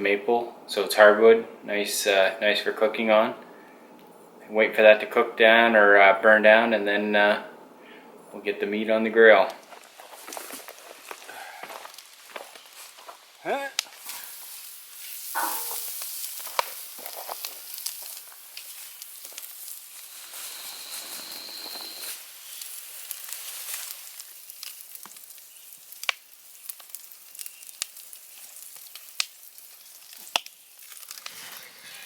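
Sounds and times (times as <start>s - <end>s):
campfire crackling and hissing: 9.4s - 32.0s
sharp pops from fire: 13.8s - 31.7s
thin high whistle: 15.3s - 15.9s, 20.1s - 22.2s.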